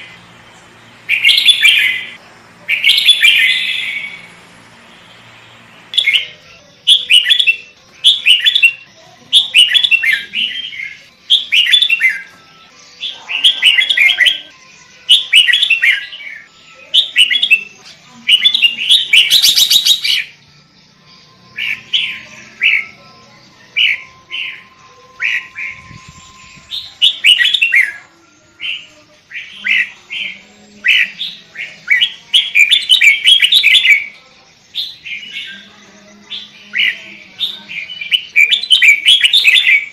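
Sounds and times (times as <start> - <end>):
bird chirping: 0.0 - 12.3, 12.9 - 20.5, 21.1 - 39.9.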